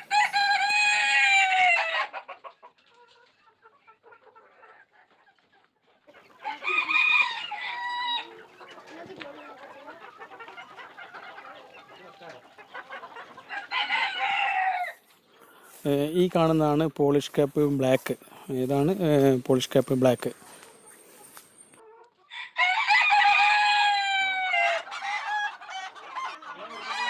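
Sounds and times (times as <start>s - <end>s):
rooster crowing: 0.0s - 2.1s, 6.5s - 8.4s, 13.5s - 15.0s, 22.3s - 26.0s
chickens clucking: 0.0s - 27.0s.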